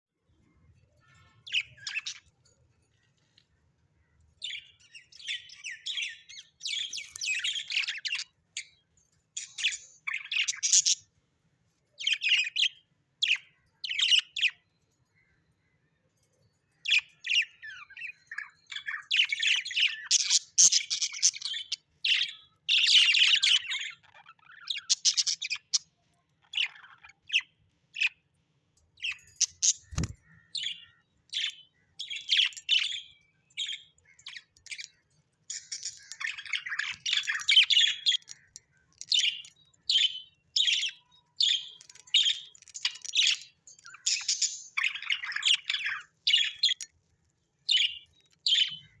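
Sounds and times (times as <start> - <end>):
birds chirping: 0.0 - 49.0.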